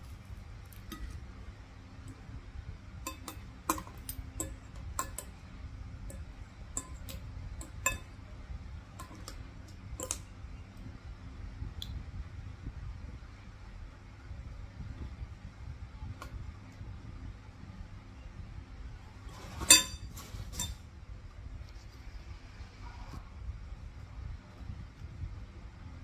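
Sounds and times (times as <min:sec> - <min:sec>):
low steady hum: 0:00.0 - 0:26.0
cutlery clicks and clinks: 0:03.1 - 0:05.3, 0:10.0 - 0:10.2.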